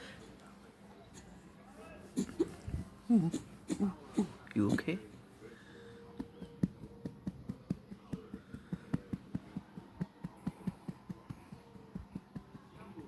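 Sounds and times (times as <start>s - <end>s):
dog sneezing: 2.2s - 2.6s.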